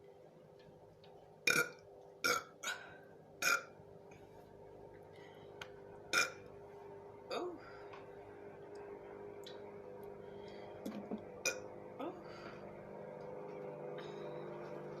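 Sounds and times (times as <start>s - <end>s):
woman burping: 1.5s - 3.7s, 6.1s - 6.4s, 7.3s - 7.6s.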